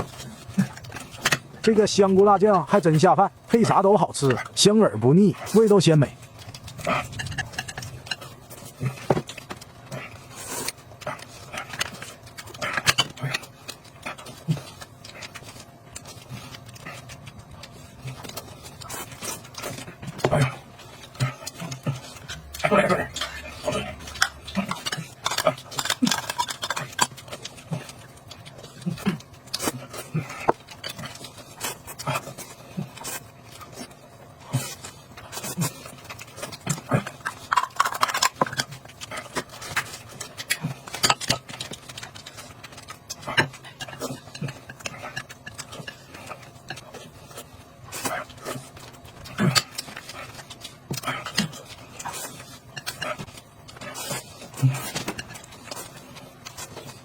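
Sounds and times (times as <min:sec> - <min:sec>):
chewing and lip-smacking: 0:05.3 - 0:57.0
utensils clicking against dishes: 0:22.2 - 0:27.6.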